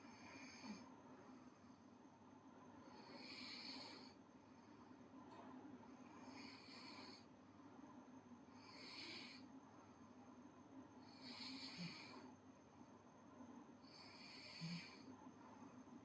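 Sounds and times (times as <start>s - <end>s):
person snoring softly: 0.0s - 1.9s, 2.8s - 4.9s, 5.9s - 7.3s, 8.5s - 9.5s, 11.0s - 12.4s, 13.8s - 15.8s.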